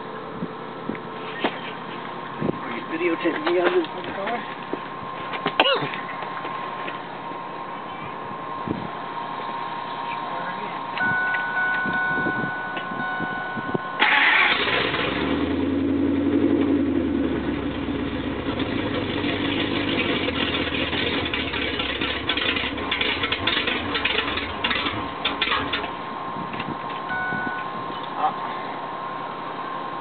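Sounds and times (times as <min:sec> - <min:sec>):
car engine starting and idling: 0:06.0 - 0:30.0.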